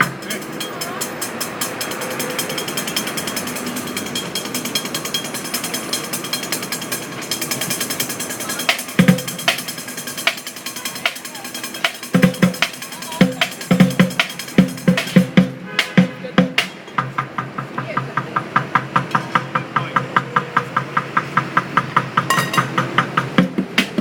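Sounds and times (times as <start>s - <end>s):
drum hits: 8.7s - 11.2s, 11.8s - 24.0s.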